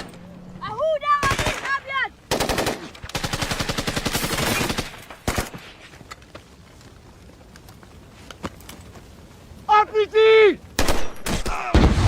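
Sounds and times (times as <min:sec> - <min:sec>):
automatic gunfire: 0:02.3 - 0:05.5
loud single gunshot: 0:10.8 - 0:12.0.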